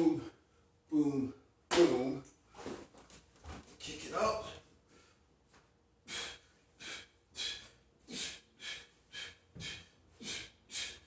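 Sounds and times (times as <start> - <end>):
man breathing hard: 6.0 - 11.0.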